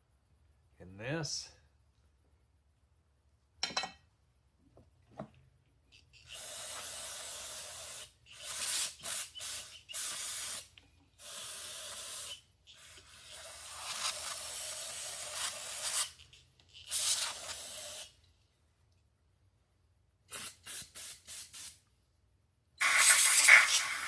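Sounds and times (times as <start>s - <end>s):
aerosol spray can hissing: 6.2s - 18.2s, 20.3s - 21.8s, 22.8s - 24.0s.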